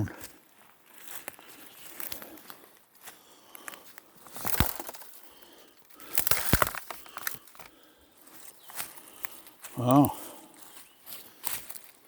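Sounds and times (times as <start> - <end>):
footsteps crunching dry leaves: 0.2 - 12.0.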